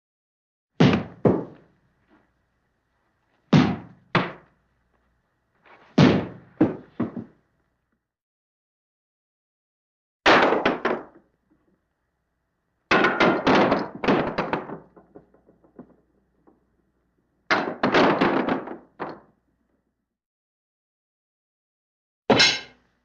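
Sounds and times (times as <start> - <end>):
ball bouncing off wall: 0.8 - 1.7, 3.5 - 4.5, 5.9 - 7.3.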